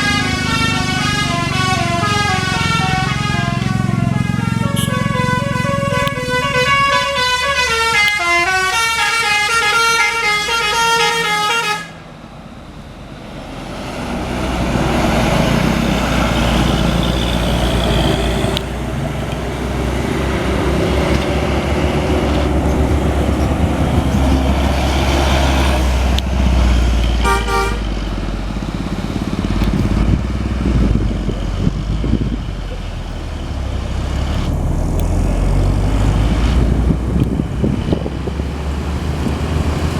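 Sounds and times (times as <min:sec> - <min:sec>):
bus horn playing a melody: 0:00.0 - 0:12.0, 0:27.2 - 0:27.9
bus engine and road rumble: 0:00.0 - 0:39.9.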